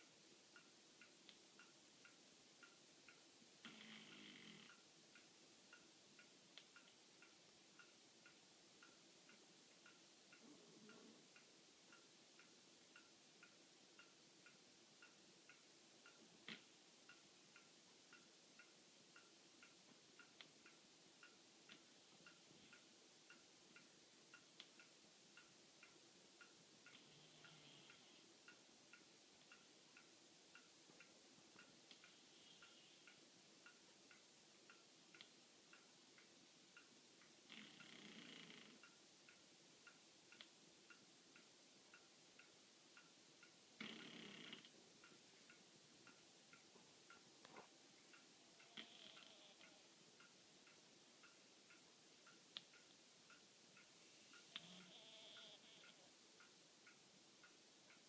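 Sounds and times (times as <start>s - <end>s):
faint steady ticking: 0.0s - 58.0s
dog snoring softly: 3.6s - 4.8s, 27.0s - 28.2s, 37.5s - 38.8s, 43.8s - 44.7s, 48.6s - 49.8s, 54.5s - 56.0s.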